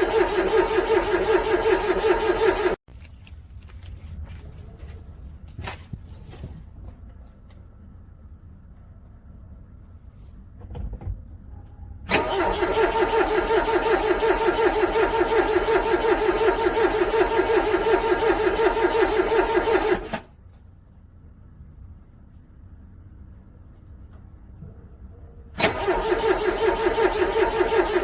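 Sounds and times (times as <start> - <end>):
car engine cranking: 0.0 - 2.8, 12.1 - 20.3, 25.5 - 28.0.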